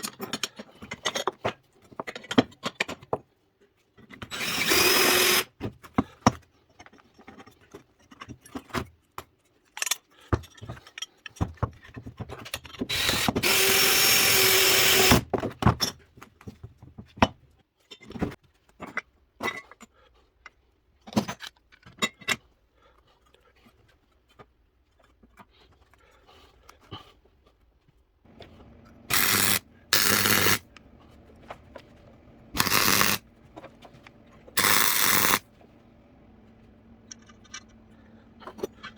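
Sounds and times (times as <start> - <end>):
power tool bursts: 4.3 - 5.5, 12.9 - 15.3, 28.3 - 35.6
tool handling clicks and knocks: 28.3 - 38.9.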